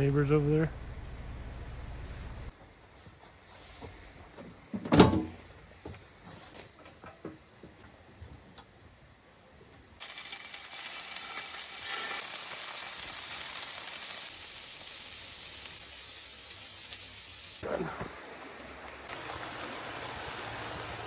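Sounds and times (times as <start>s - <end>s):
heavy rain falling: 17.6s - 21.0s.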